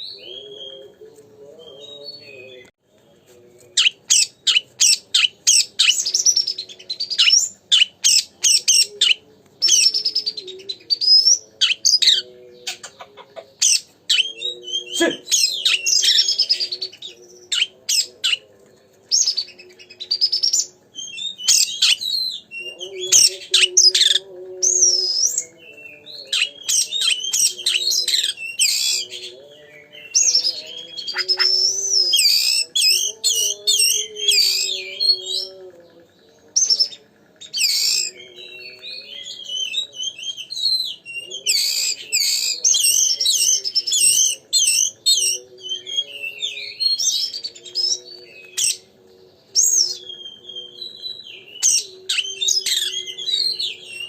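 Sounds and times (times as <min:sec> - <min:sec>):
bird singing whistles and chirps: 0:00.0 - 0:01.0, 0:19.1 - 0:54.0.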